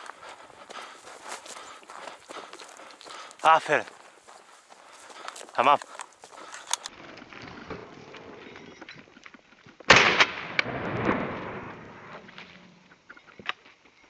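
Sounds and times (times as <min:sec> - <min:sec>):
shotgun shot with rolling echo: 0:09.9 - 0:12.2.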